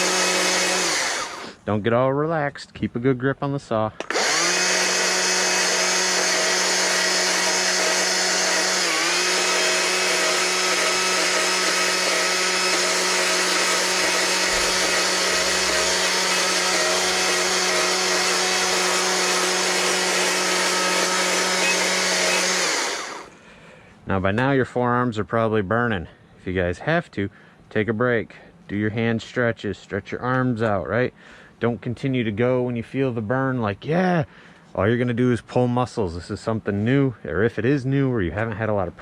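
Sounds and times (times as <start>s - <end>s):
chainsaw whining at high speed: 0.0s - 1.6s, 4.0s - 23.4s.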